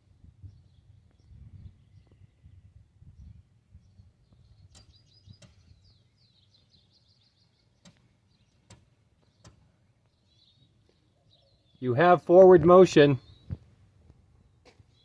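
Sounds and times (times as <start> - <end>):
faint birdsong: 0.0 - 15.0
bird chirping trill: 0.4 - 12.0
sharp clicks: 4.7 - 5.6.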